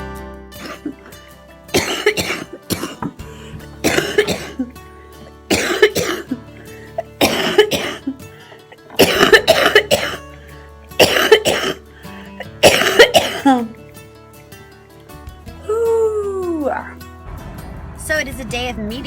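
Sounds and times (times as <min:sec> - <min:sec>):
background music: 0:00.0 - 0:19.0
woman coughing up mucus: 0:00.6 - 0:04.8, 0:05.5 - 0:10.3, 0:10.9 - 0:13.9.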